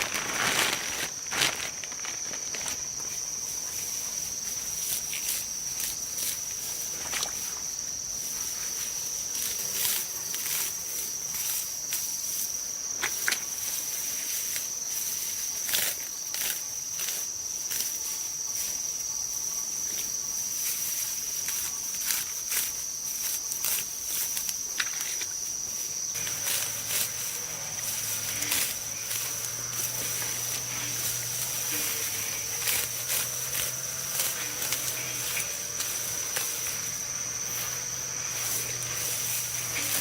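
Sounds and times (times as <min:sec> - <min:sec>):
insects droning: 0:00.0 - 0:40.0.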